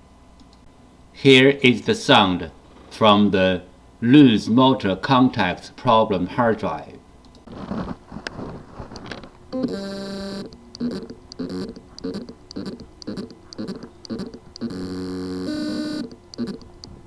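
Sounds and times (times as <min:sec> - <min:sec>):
hard drive motor buzzing: 0:09.5 - 0:17.0.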